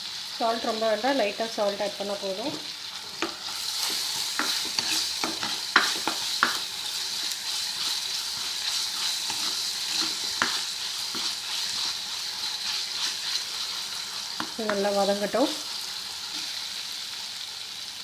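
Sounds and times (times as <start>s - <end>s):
vegetables sizzling in hot oil: 0.0s - 18.0s
spoon scraping and clicking on pan: 3.2s - 6.6s, 7.8s - 11.9s.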